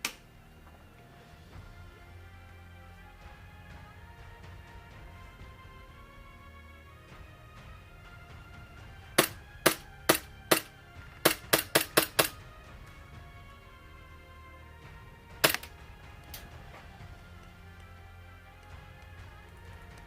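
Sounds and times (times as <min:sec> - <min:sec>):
background music: 0:00.0 - 0:20.0
airsoft gun shots: 0:09.2 - 0:12.4.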